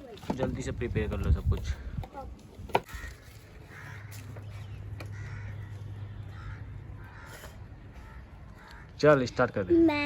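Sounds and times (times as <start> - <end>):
faint bird calls: 2.8 - 9.0.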